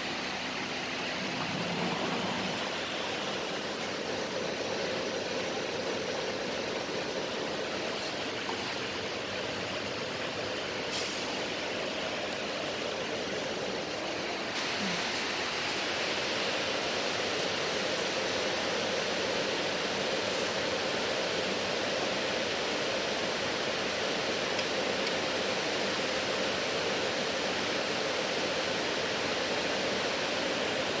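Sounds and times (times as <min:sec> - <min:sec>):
elevator machine rushing noise: 0:00.0 - 0:04.7.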